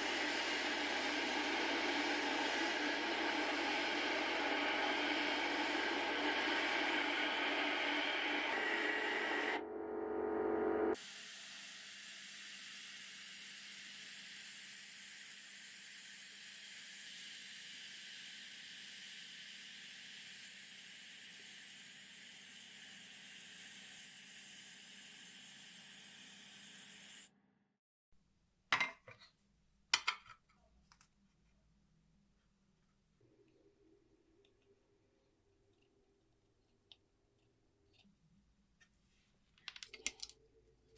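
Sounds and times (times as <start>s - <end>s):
spraying hiss: 0.0s - 9.6s.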